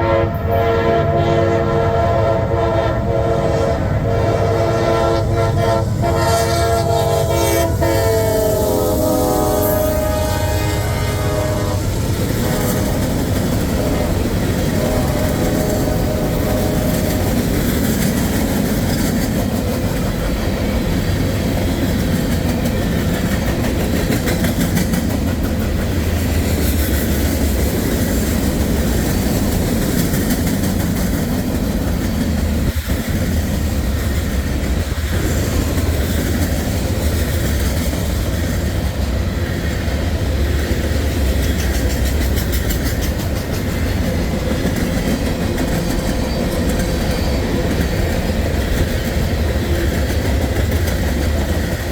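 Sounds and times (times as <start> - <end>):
freight train rumbling past: 0.0 - 51.9
wheels clacking over rail joints: 11.0 - 51.9.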